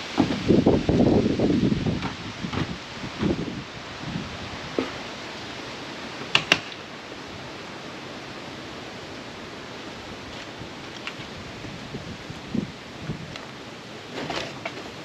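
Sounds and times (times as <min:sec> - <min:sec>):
strong wind rushing: 0:00.0 - 0:04.8, 0:10.0 - 0:13.4.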